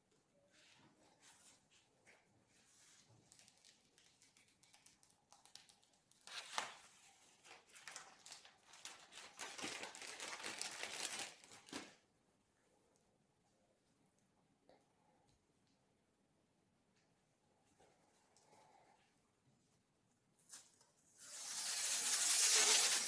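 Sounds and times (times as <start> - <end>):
packaging crinkling and tearing: 3.3 - 12.0.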